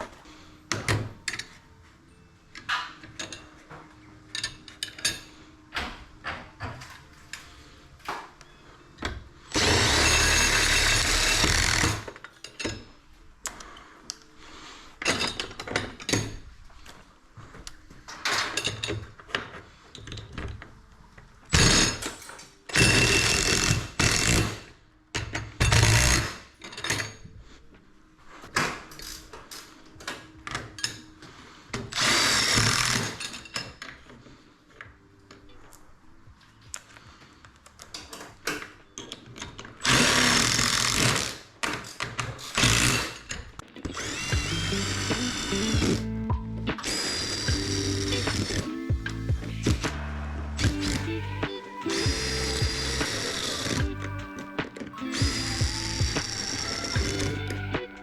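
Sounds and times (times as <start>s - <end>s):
power drill running: 9.5s - 12.1s, 22.7s - 24.6s, 31.9s - 33.2s, 39.8s - 41.4s, 42.6s - 43.2s, 43.9s - 58.0s.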